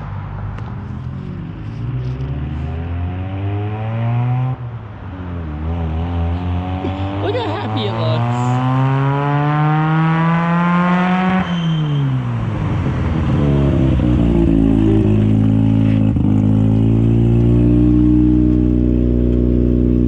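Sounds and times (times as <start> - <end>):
rotary engine revving: 5.6 - 11.5.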